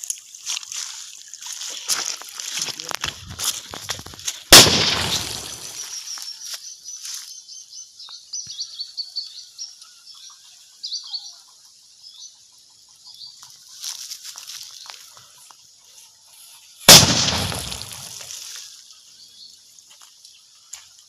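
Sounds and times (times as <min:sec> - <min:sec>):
firecracker blast: 0:04.5 - 0:05.8, 0:16.9 - 0:18.3
birds chirping: 0:04.5 - 0:12.4.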